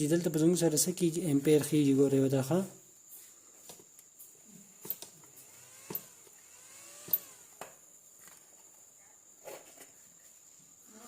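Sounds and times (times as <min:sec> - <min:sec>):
faint high-pitched whine: 0:00.0 - 0:11.0.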